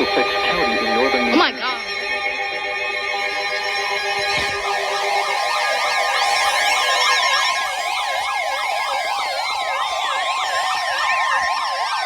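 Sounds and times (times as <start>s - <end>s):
steady alert tones: 0.0s - 1.9s
electronic sirens sweeping: 0.0s - 12.0s.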